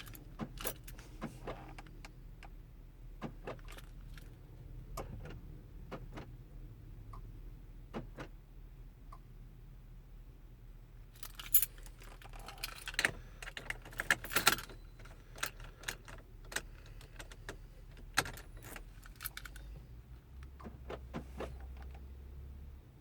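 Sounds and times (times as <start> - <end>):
keys jangling and clicking: 0.0 - 1.0, 11.2 - 19.8.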